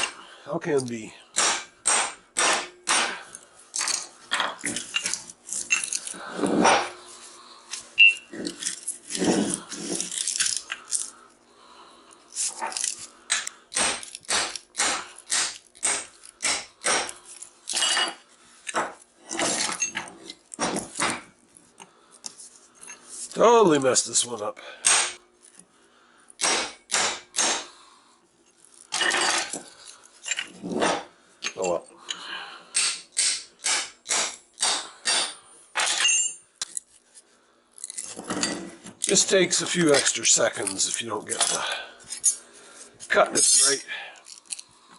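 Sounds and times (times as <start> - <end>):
metal tool scraping copper coil: 3.2 - 11.3, 12.2 - 24.4, 35.1 - 44.7
hand tool cutting metal: 12.4 - 18.1
metallic ring: 35.7 - 36.6.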